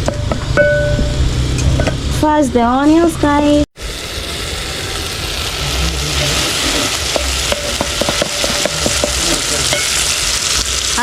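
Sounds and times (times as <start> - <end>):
onions sizzling in hot oil: 3.8 - 11.0
spoon stirring against a pan: 6.8 - 10.2.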